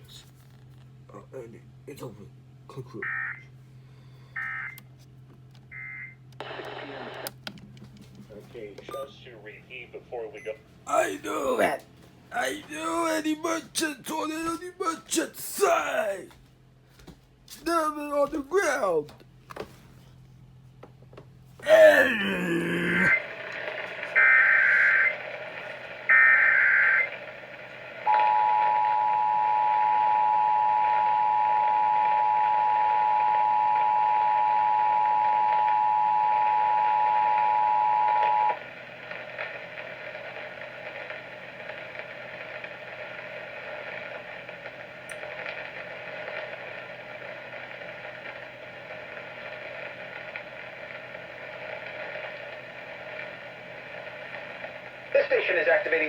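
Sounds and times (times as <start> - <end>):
faint radio hiss: 6.4 - 16.4, 17.4 - 20.3, 21.6 - 28.2, 38.1 - 56.0.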